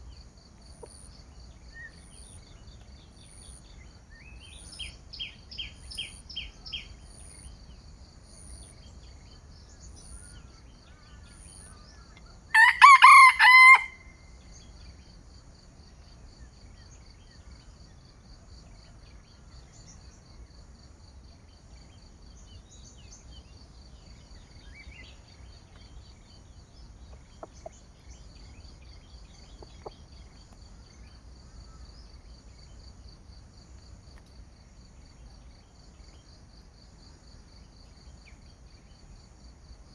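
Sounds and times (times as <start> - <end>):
rooster crowing: 12.5 - 14.2.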